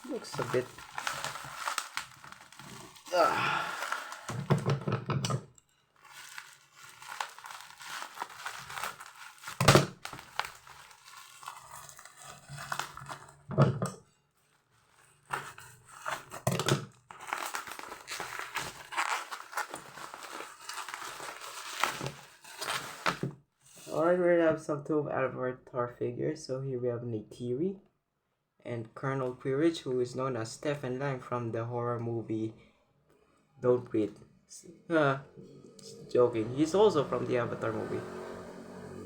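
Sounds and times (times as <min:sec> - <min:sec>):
packaging crinkling and tearing: 0:00.0 - 0:04.8, 0:06.0 - 0:13.4, 0:14.8 - 0:23.3.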